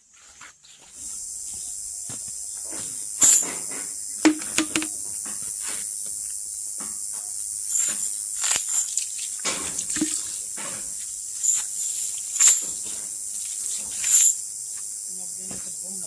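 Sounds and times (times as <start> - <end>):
insect chorus: 0.0 - 16.0
knocks of objects being handled: 3.4 - 5.0, 9.5 - 10.8.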